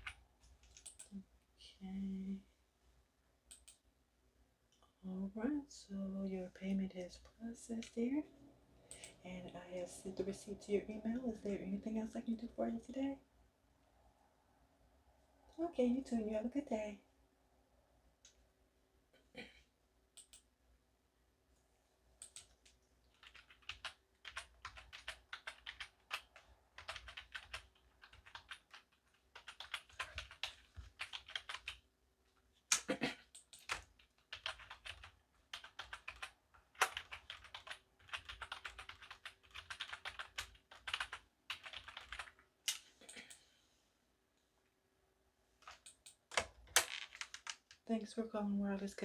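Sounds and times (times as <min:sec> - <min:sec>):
computer keyboard typing: 0:00.0 - 0:01.1, 0:22.2 - 0:31.8, 0:33.4 - 0:42.4.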